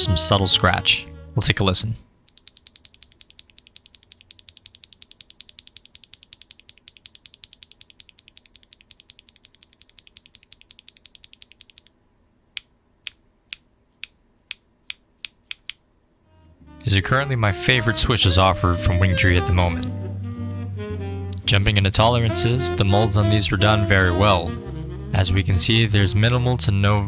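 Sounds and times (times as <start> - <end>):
keyboard switch clacking: 12.6 - 15.8.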